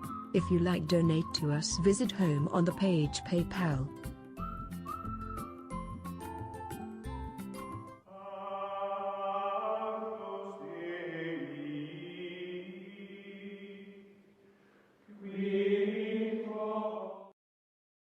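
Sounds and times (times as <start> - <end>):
chant-like singing: 8.1 - 14.2, 15.1 - 17.4.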